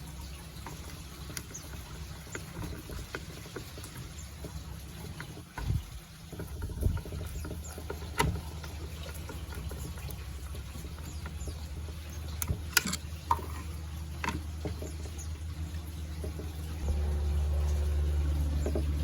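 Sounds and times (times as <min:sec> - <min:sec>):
sharp clicks and crackles: 0:00.6 - 0:15.2.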